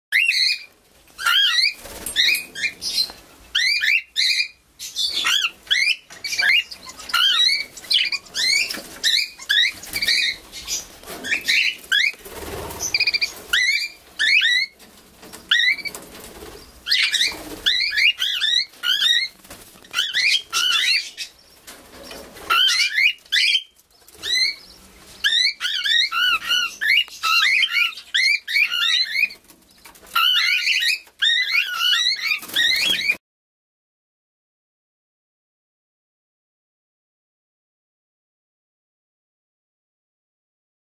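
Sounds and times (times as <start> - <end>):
cockatiel chirping: 0.1 - 12.2, 12.8 - 16.0, 16.8 - 21.3, 22.5 - 29.4, 30.1 - 33.2.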